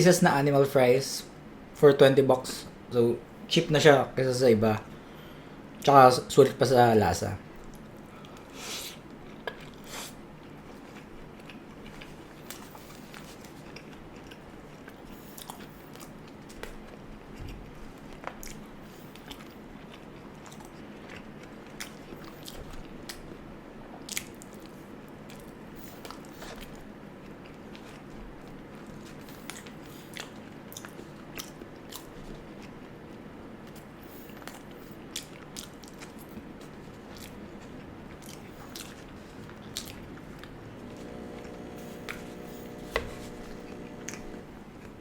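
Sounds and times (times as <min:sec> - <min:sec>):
person chewing food: 0:07.5 - 0:45.0
mouth clicks and crunches: 0:24.0 - 0:45.0
low hum: 0:40.5 - 0:45.0.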